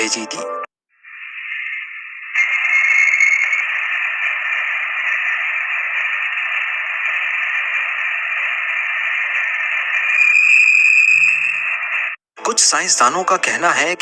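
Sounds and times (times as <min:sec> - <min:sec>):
static hiss: 0:01.0 - 0:12.2.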